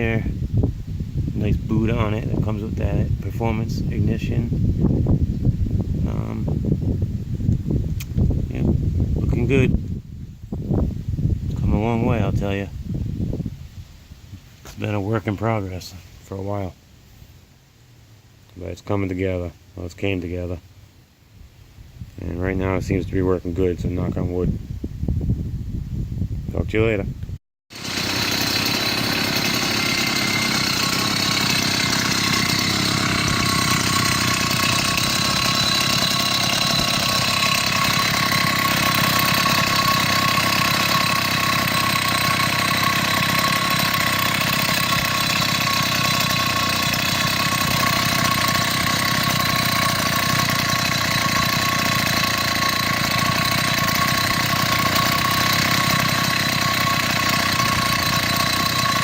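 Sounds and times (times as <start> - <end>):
two-stroke engine idling: 27.7 - 59.0.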